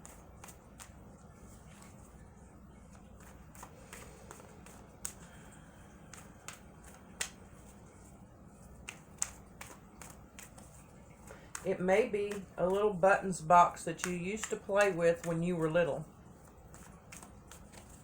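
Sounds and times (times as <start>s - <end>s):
cards being shuffled: 0.0s - 2.2s, 2.8s - 13.0s, 13.9s - 18.0s
faint low hum: 0.0s - 18.0s.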